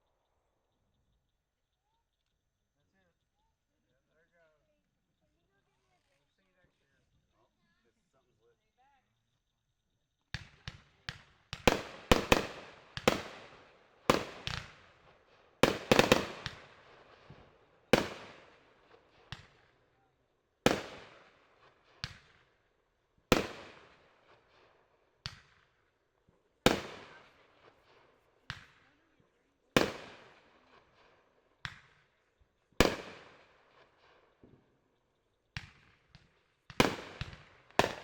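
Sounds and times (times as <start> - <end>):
fireworks banging: 10.4 - 15.0, 15.6 - 18.5, 35.6 - 38.0.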